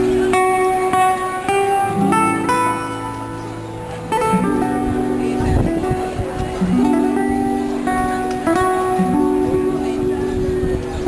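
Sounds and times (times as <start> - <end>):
acoustic guitar tango: 0.0 - 11.0.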